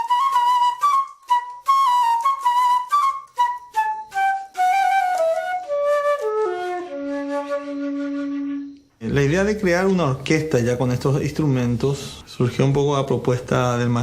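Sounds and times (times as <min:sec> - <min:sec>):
flute playing quick notes: 0:00.0 - 0:08.9.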